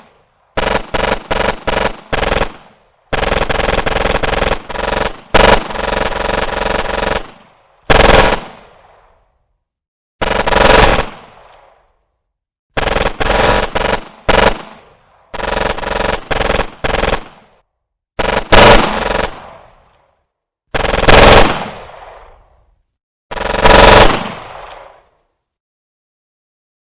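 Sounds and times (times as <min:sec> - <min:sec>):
automatic gunfire bursts: 0:00.6 - 0:08.6, 0:10.2 - 0:11.4, 0:12.8 - 0:17.6, 0:18.2 - 0:19.7, 0:20.8 - 0:22.0, 0:23.3 - 0:24.8.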